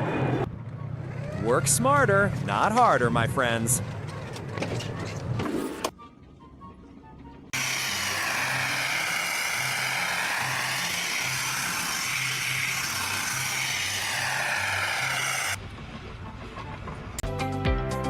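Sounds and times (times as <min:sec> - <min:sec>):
loud rushing hiss: 0:07.6 - 0:15.6.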